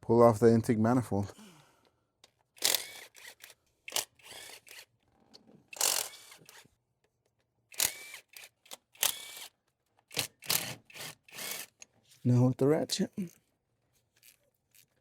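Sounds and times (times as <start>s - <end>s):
socket ratchet clicking: 2.6s - 4.8s, 5.8s - 6.6s, 7.7s - 9.5s, 10.1s - 11.8s.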